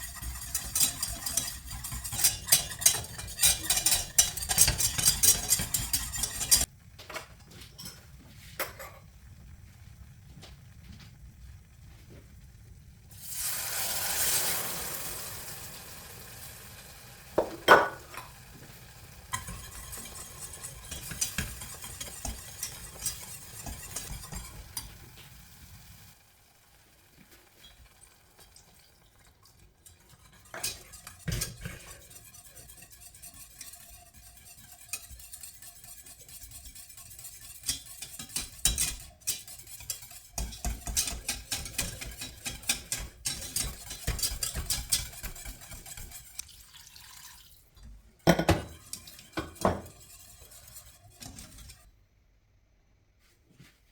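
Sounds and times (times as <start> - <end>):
spoon scraping and clinking on pan: 0.0 - 6.7, 19.2 - 25.0, 29.7 - 46.4, 48.2 - 51.9
sauce sizzling: 13.1 - 31.8, 40.2 - 51.4.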